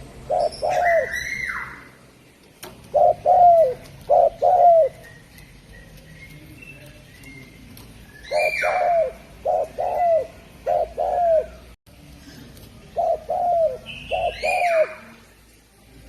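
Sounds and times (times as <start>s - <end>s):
dove cooing: 0.2s - 1.8s, 2.8s - 5.6s, 8.2s - 11.7s, 12.8s - 15.2s.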